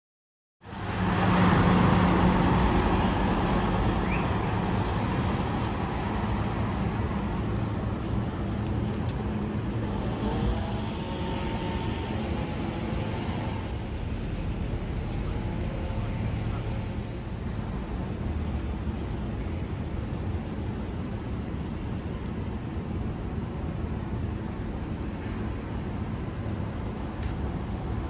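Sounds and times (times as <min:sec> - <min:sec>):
road traffic engines and tyres: 0:00.6 - 0:28.0.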